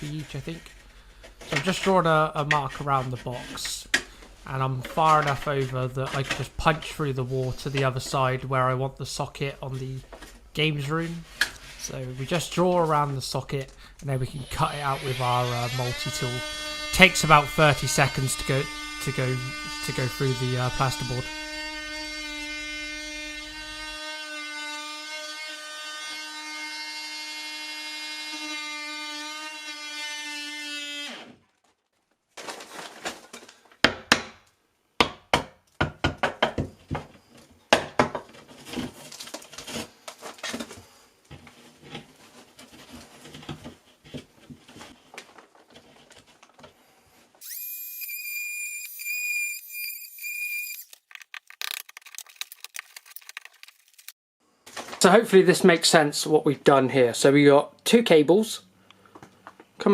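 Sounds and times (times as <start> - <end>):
multi-tool cutting plasterboard: 14.2 - 31.4.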